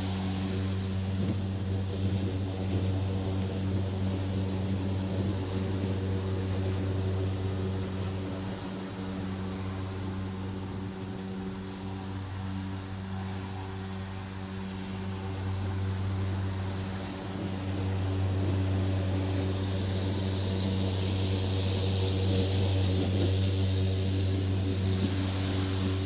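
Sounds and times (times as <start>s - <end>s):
lawn mower engine running: 0.0s - 26.0s.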